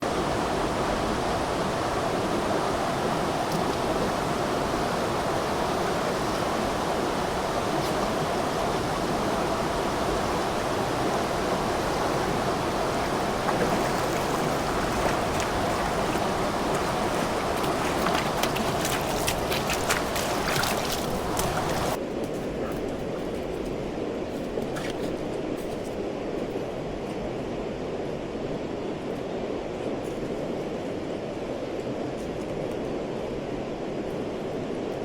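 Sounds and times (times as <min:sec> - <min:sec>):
stream flowing: 0:00.0 - 0:22.0.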